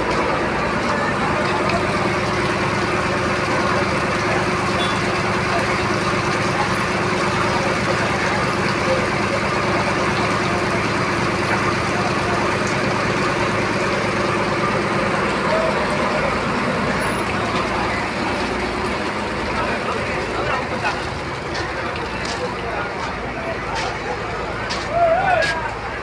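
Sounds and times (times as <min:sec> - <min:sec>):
boat engine running: 0:00.0 - 0:26.0.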